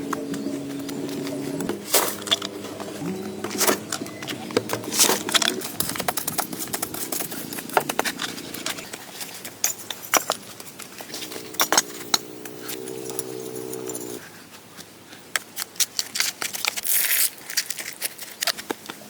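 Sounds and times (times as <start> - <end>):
steady pitched whine: 11.2 - 14.2.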